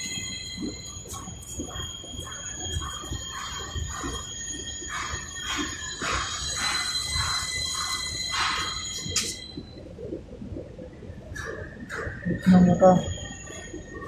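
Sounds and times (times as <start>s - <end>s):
machine high whine: 0.0s - 9.8s.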